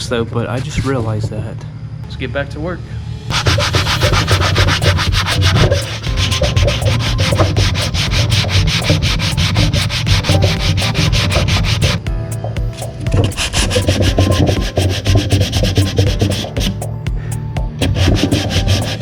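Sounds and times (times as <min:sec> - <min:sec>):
sandpaper rubbing on wood: 0:03.3 - 0:12.0, 0:12.8 - 0:16.8, 0:17.8 - 0:19.0.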